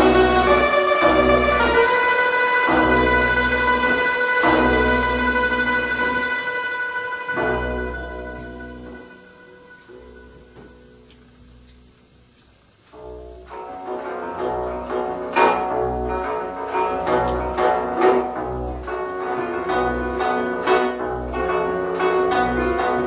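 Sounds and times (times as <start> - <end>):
plucked-string music: 0.0 - 12.0, 12.9 - 23.0.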